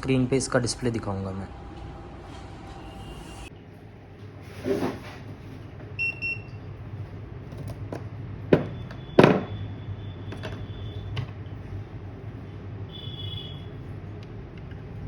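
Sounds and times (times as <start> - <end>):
low steady hum: 0.0 - 9.0
tools knocking on bench: 7.9 - 9.5.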